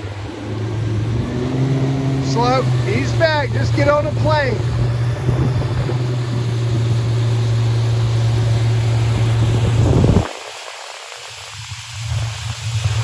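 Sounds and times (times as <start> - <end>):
outboard motor running: 0.0 - 13.0
water noise: 0.0 - 13.0
wind: 0.0 - 13.0.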